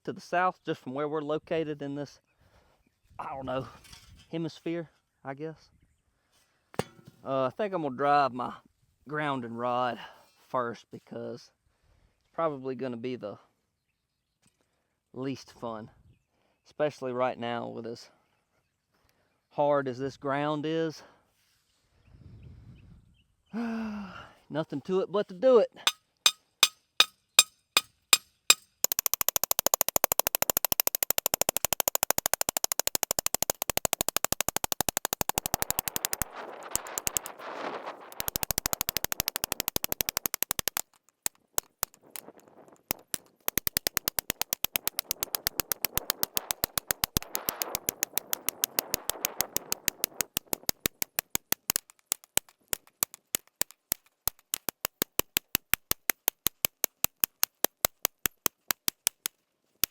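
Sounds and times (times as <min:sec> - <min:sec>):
metal-on-metal hammering of rod: 0:06.8 - 0:07.1, 0:25.9 - 0:34.2.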